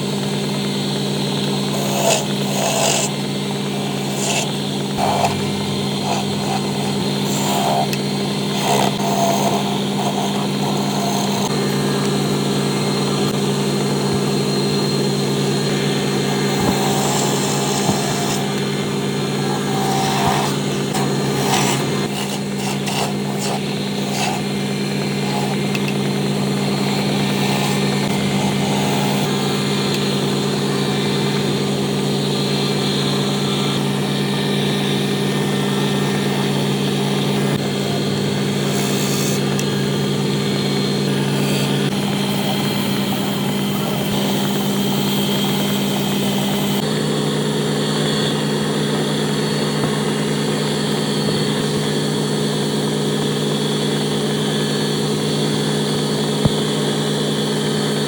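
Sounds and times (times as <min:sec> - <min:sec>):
power tool motor humming: 0:00.0 - 0:58.0
clicks and scraping: 0:01.6 - 0:11.6, 0:16.5 - 0:30.4.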